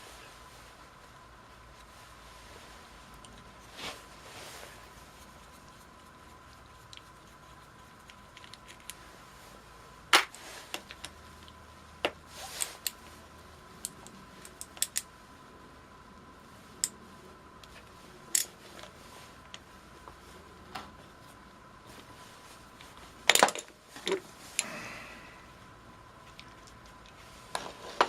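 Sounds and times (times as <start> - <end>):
metallic clicks of tools and parts: 13.8 - 15.1.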